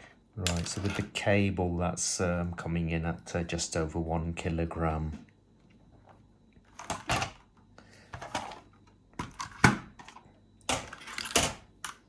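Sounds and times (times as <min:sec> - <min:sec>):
keyboard rustling and clattering: 0:00.4 - 0:01.2, 0:06.7 - 0:07.5, 0:08.2 - 0:12.0.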